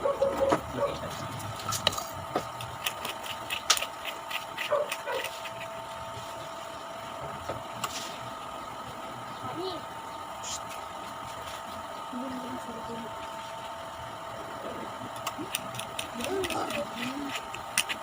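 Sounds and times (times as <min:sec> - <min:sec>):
faint hum: 0:00.0 - 0:18.0
crunchy biting and chewing: 0:00.2 - 0:06.3, 0:14.8 - 0:18.0.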